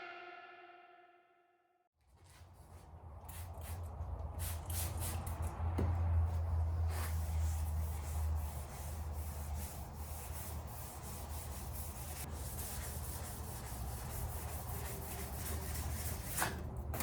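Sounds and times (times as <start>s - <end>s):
sandpaper rasping on metal: 7.1s - 16.4s.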